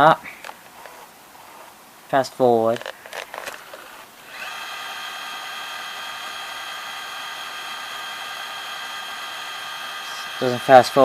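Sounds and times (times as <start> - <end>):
camcorder tape transport whirring: 2.8 - 11.0.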